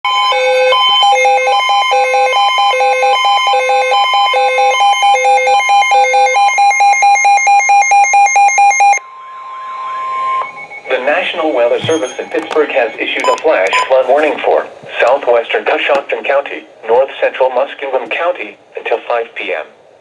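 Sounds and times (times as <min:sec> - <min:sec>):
steady high alarm tone: 0:00.1 - 0:14.4
weather radio electronic beeps: 0:00.8 - 0:15.2.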